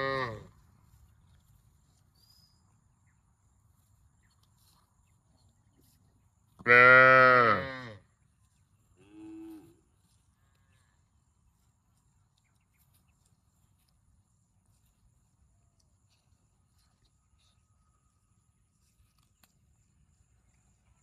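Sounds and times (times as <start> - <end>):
cow mooing: 6.7 - 8.0.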